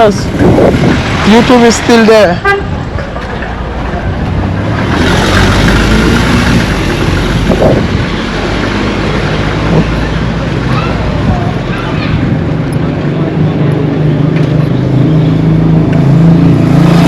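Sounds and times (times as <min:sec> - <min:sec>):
vehicle passing close by: 0:04.2 - 0:10.5, 0:14.0 - 0:17.0.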